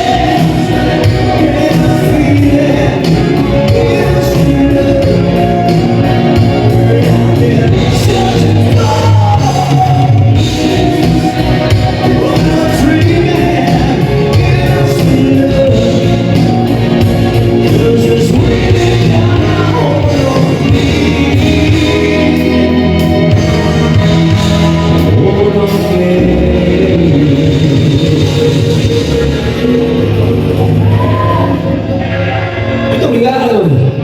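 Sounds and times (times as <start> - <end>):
lead vocal singing: 0.0 - 33.8
live rock band playing: 0.0 - 34.0.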